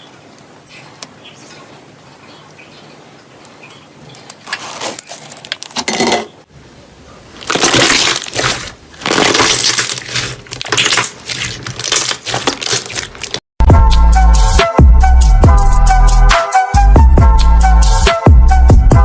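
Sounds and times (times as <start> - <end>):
slime squelching and popping: 7.4 - 13.4.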